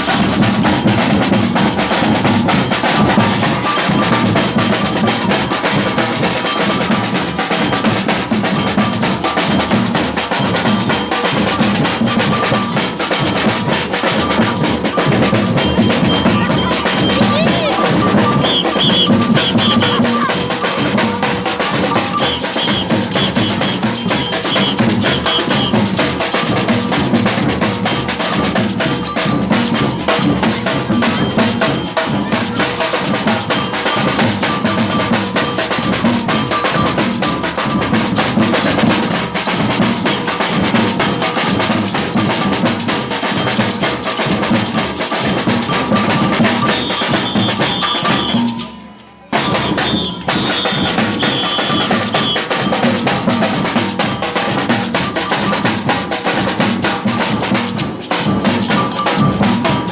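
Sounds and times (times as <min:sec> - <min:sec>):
samba percussion band drumming: 0:00.0 - 0:59.9.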